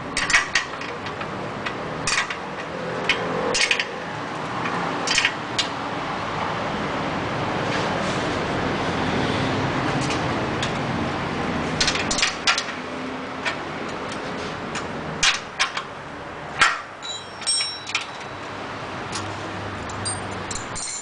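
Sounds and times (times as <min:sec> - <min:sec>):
metallic clicks of tools: 0:00.2 - 0:03.9, 0:16.6 - 0:18.3, 0:19.1 - 0:21.0
metallic ringing: 0:17.0 - 0:18.5, 0:19.9 - 0:21.0.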